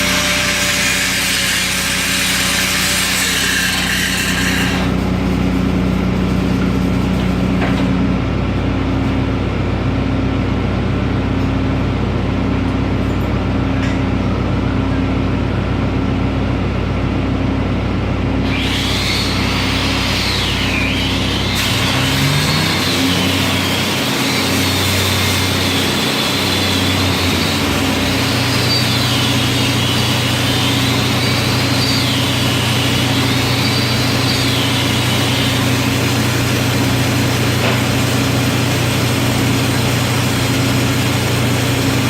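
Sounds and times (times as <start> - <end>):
welding arc hissing and crackling: 0.0 - 7.7
welding machine engine running: 0.0 - 9.1, 18.4 - 42.0.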